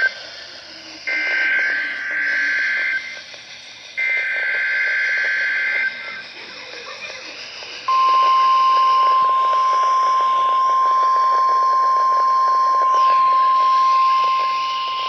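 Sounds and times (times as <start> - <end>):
loud steady high alarm tone: 1.1 - 3.3, 4.0 - 6.2, 7.9 - 15.0.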